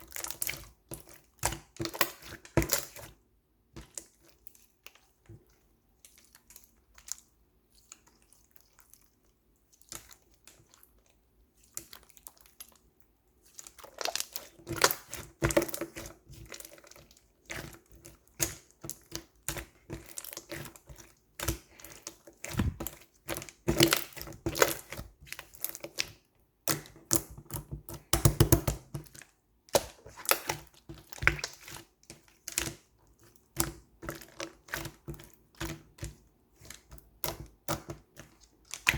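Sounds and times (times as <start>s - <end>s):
slime squeezed by hand: 22.4s - 22.9s.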